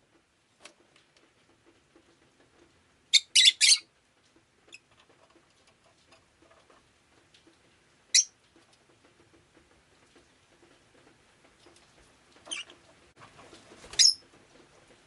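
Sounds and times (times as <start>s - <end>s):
lovebird shrill calls: 3.1s - 3.8s.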